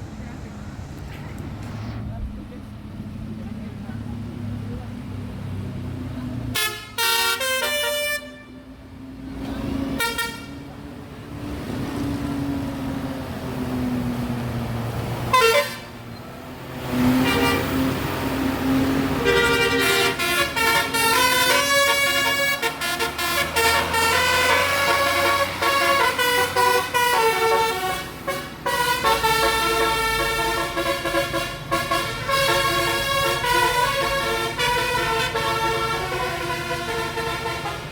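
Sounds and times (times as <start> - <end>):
musical bus horn tune: 6.5 - 8.8, 9.8 - 10.7, 15.3 - 16.0, 16.8 - 37.9.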